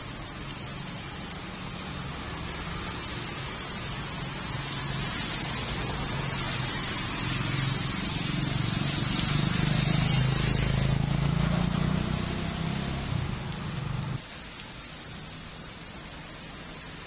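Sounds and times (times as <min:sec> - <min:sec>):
hiss of rain and wet traffic: 0:00.0 - 0:17.0.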